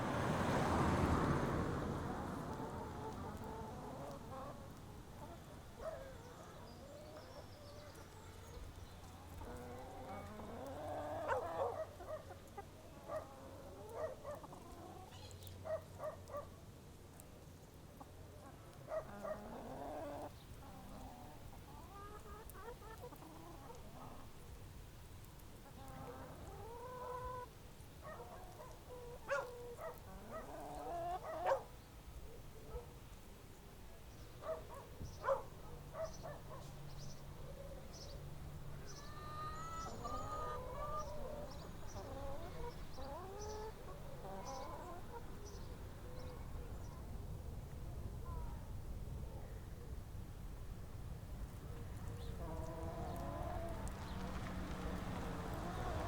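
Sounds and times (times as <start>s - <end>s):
chickens clucking: 2.3s - 12.8s, 13.4s - 15.4s, 18.0s - 24.3s, 25.6s - 27.5s, 28.1s - 31.6s, 38.9s - 45.6s, 52.3s - 56.0s.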